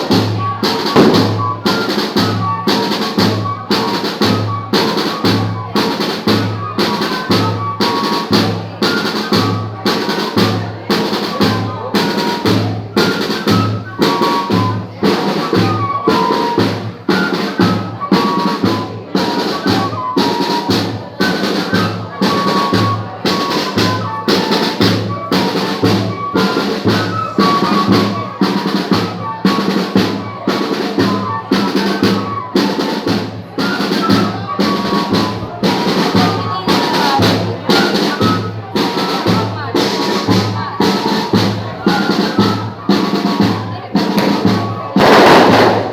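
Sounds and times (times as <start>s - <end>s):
sharp percussion strokes: 0.0s - 5.2s, 44.2s - 45.9s
bass drum beating: 0.9s - 1.6s.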